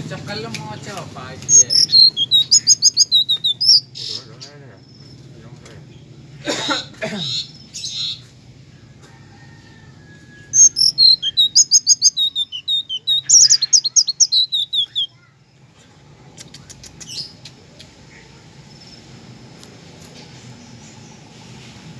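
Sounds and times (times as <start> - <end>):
songbird chirping: 0.0 - 6.4, 7.2 - 21.8.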